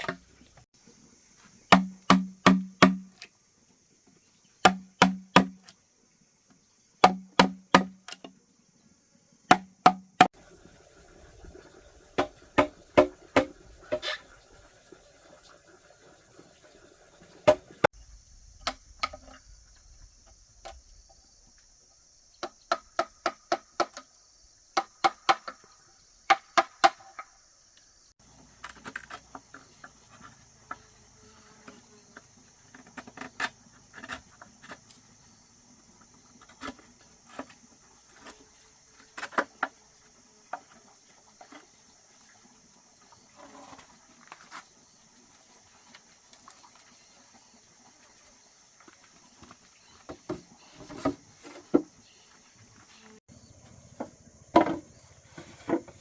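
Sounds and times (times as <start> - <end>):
insect drone: 0.0 - 56.0
hand tool striking wood: 1.7 - 3.3, 4.6 - 5.7, 7.0 - 8.3, 9.5 - 10.4, 12.2 - 14.1, 22.4 - 24.1, 24.8 - 25.6, 26.3 - 27.3, 54.0 - 56.0.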